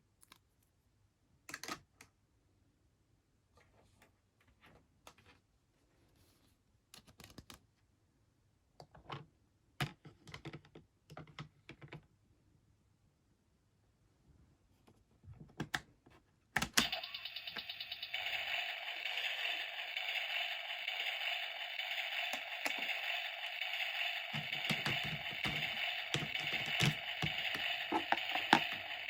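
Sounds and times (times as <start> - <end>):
small mechanism rattling whir: 16.8 - 29.0.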